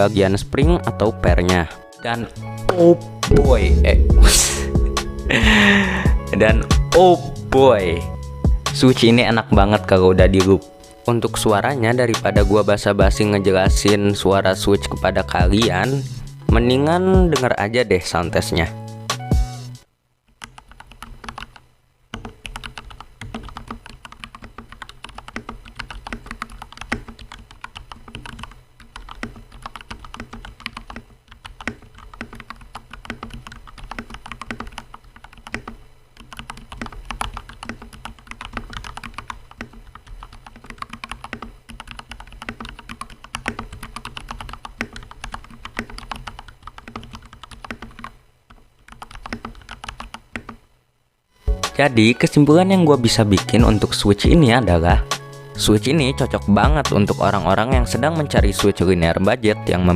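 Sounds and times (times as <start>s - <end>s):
mechanical keyboard typing: 20.4s - 50.6s.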